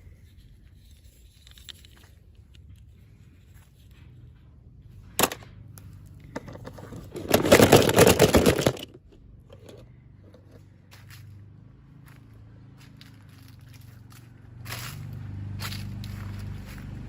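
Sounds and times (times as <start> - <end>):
packaging snapping: 6.8 - 8.9
packaging crackling: 6.9 - 8.9.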